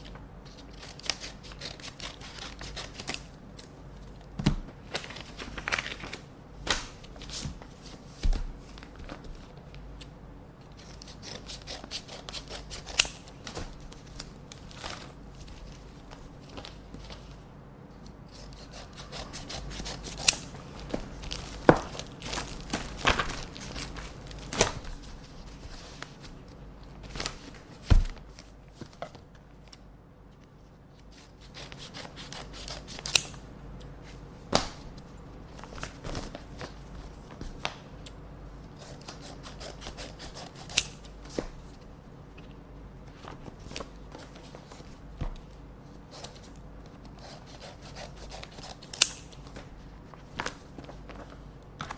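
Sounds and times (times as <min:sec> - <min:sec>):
scissors snipping paper: 0:00.5 - 0:03.3, 0:10.8 - 0:13.3, 0:18.3 - 0:20.5, 0:31.1 - 0:33.4, 0:38.8 - 0:41.4, 0:46.1 - 0:49.4
paper rustling: 0:04.7 - 0:09.8, 0:12.2 - 0:17.4, 0:18.4 - 0:29.2.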